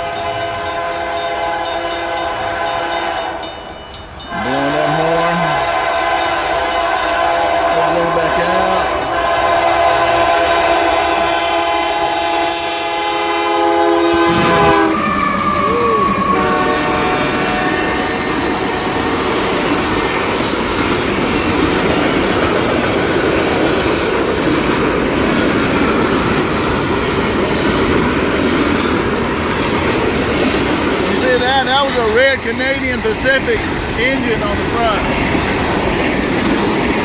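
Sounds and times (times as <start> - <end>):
diesel locomotive horn: 0.0 - 3.6, 4.2 - 20.4
freight cars rumbling and rattling: 19.1 - 37.0.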